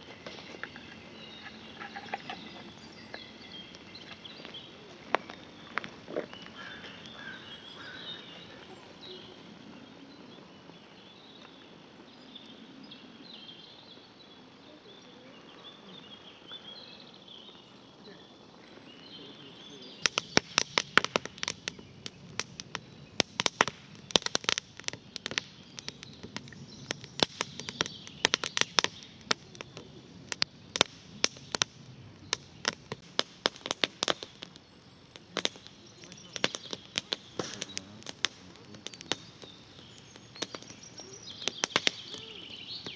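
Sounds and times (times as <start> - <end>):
faint bird chirps: 0.0 - 23.2, 23.9 - 30.5, 34.2 - 42.9
sharp snapping and crackling clicks: 20.0 - 42.9.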